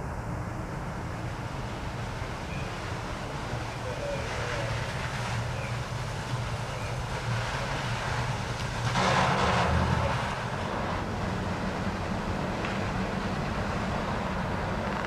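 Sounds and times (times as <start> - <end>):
engine droning: 0.0 - 15.0
rushing noise: 0.0 - 15.0.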